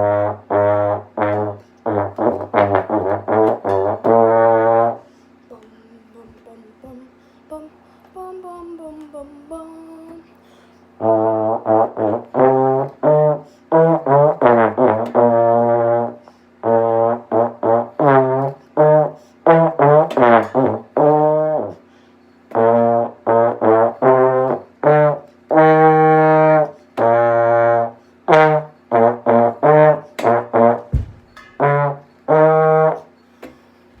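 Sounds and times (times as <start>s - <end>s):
brass instrument melody: 0.0s - 5.1s, 11.0s - 21.8s, 22.5s - 33.1s.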